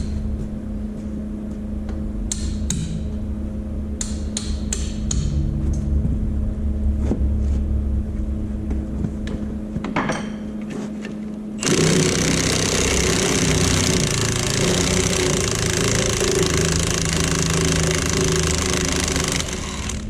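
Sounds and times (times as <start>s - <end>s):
low hum: 0.0s - 20.0s
loud machinery running: 11.6s - 20.0s.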